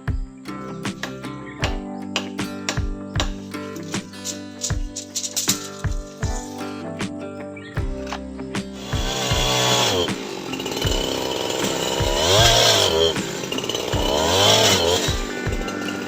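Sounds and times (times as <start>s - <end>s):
chainsaw engine revving: 8.8s - 16.0s.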